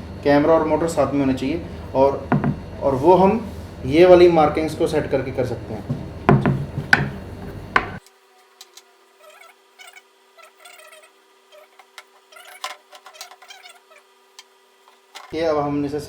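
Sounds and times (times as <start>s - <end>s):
faint steady hum: 0.0s - 16.0s
person speaking: 9.2s - 14.1s.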